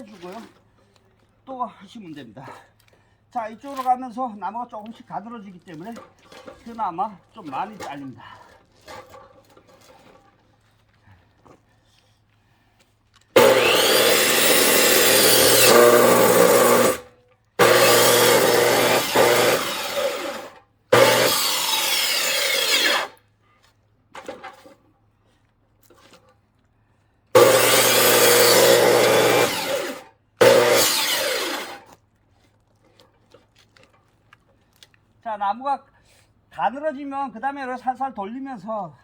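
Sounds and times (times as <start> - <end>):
electric saw cutting log: 13.4 - 23.2, 27.4 - 31.9.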